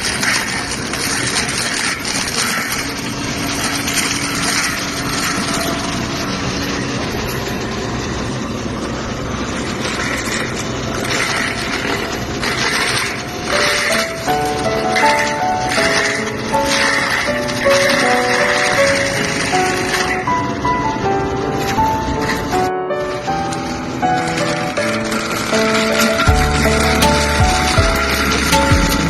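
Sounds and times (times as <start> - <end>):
brush cutter machine running: 0.0 - 29.0.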